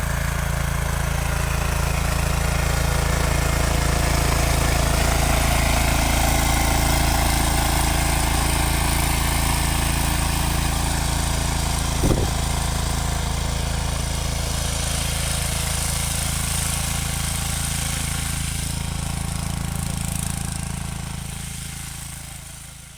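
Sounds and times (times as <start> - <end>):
brief knock: 12.0 - 12.5
tractor engine running: 12.0 - 12.7.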